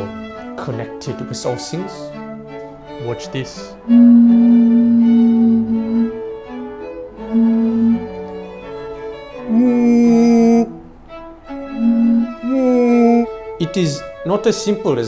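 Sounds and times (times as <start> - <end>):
bowed string music: 0.0 - 15.0.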